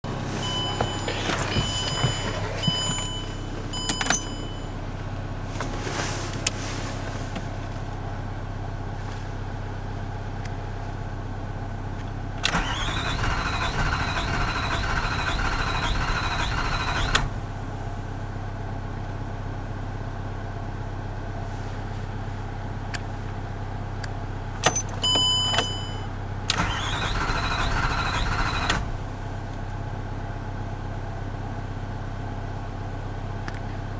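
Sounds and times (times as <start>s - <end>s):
dashboard chime beeps: 0.3s - 4.8s
engine cranking on starter: 12.4s - 17.6s, 26.5s - 29.1s.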